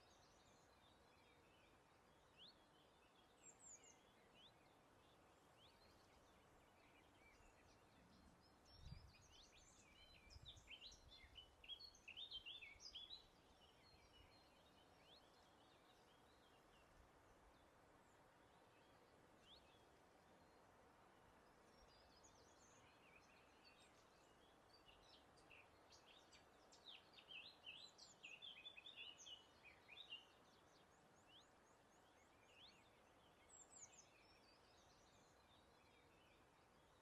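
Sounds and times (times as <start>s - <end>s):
faint birdsong: 0.0s - 37.0s.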